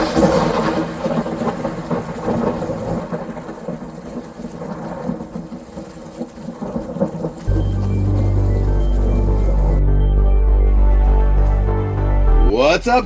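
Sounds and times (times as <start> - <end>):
low droning tone: 7.5 - 12.5.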